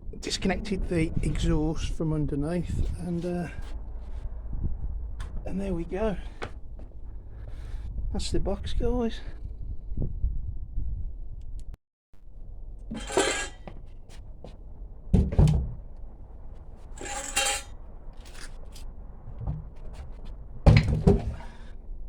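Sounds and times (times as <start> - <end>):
scraping and rustling: 12.8 - 21.7
heavy thunks: 12.9 - 16.1, 19.2 - 21.7.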